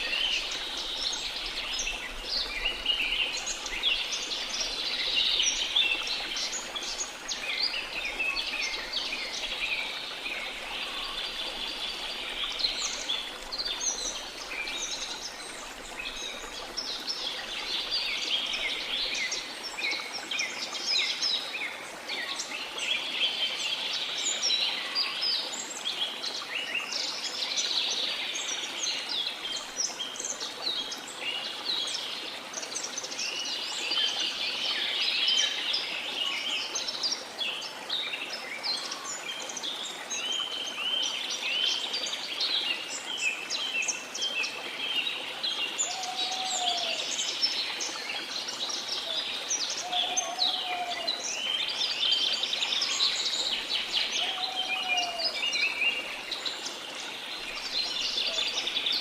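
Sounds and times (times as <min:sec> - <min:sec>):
birds chirping and singing: 0:49.0 - 0:51.3.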